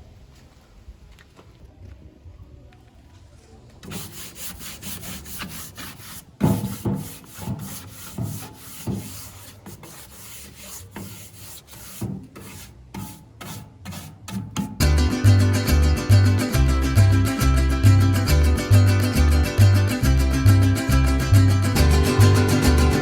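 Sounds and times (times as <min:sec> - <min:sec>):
sandpaper rubbing on wood: 0:03.8 - 0:14.4.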